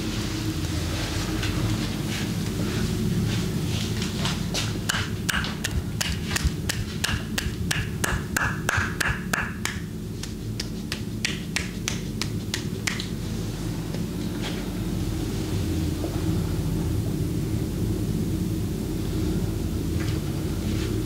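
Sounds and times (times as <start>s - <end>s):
steady low hum: 0.0s - 21.0s
hands slapping on skin: 4.9s - 13.2s.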